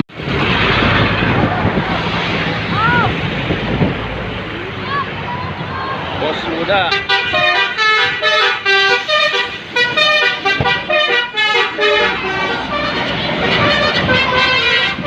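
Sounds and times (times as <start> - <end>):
musical air horn playing a tune: 6.9 - 15.0.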